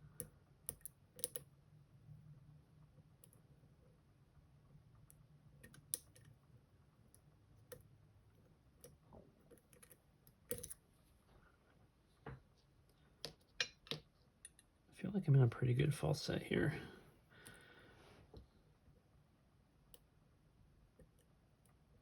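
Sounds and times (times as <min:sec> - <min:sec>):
lock picks clicking in lock: 0:00.7 - 0:01.4, 0:09.5 - 0:10.8.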